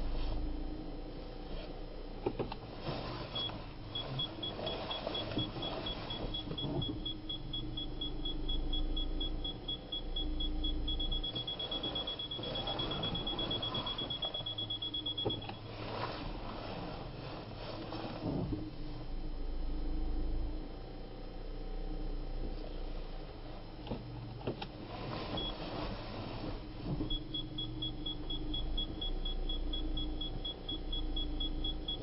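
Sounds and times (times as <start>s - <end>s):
car engine humming: 0.0s - 32.0s
parking sensor beeping: 3.3s - 15.8s, 25.3s - 25.7s, 26.8s - 32.0s.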